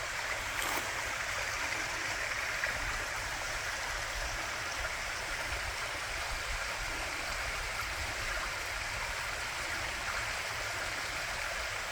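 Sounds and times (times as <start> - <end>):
stream water rushing: 0.0 - 11.9.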